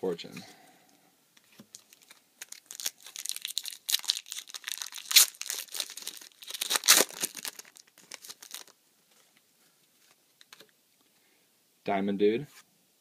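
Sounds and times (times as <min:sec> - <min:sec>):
foil wrapper crinkling and tearing: 0:01.7 - 0:08.8.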